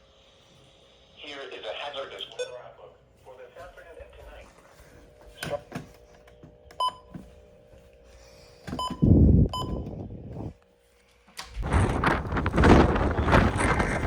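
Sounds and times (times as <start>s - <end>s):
faint steady hum: 0.0s - 14.0s
bursts of low rumbling noise: 11.6s - 14.0s.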